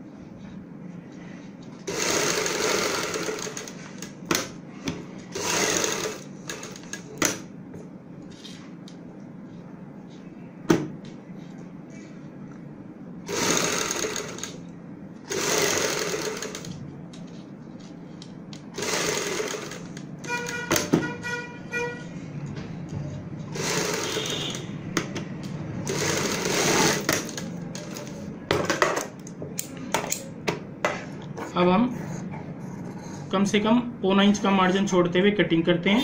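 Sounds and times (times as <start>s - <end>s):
sewing machine running: 1.8s - 4.5s, 5.3s - 7.4s, 13.3s - 14.6s, 15.2s - 16.8s, 18.7s - 20.9s, 23.5s - 24.6s, 25.8s - 28.1s.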